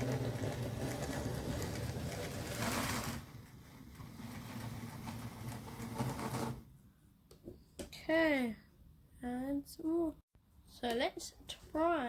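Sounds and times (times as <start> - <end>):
wheels rolling on track: 0.0 - 6.7.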